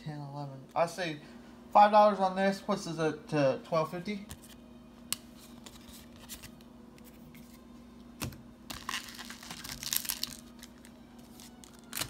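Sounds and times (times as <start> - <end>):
foil wrapper tearing and crinkling: 8.7 - 12.0.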